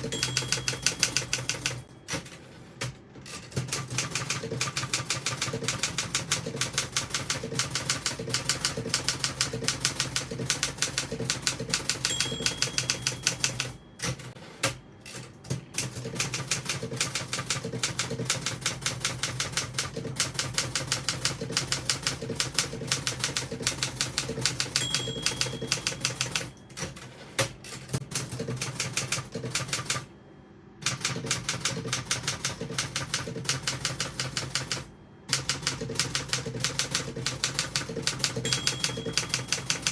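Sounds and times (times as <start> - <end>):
typewriter margin bell ringing: 0.0 - 2.5, 9.6 - 14.4, 23.6 - 27.2, 36.7 - 39.9
manual typewriter keystrokes: 0.0 - 30.1, 30.8 - 39.9.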